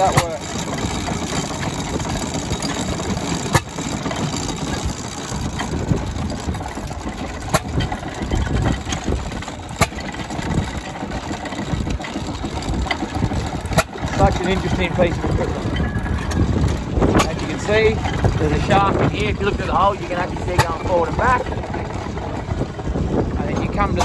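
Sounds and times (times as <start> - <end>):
sharp mechanical knock: 0.0 - 0.8, 3.5 - 4.8, 7.4 - 10.6, 20.5 - 21.0
stationary engine rumbling: 0.0 - 24.0.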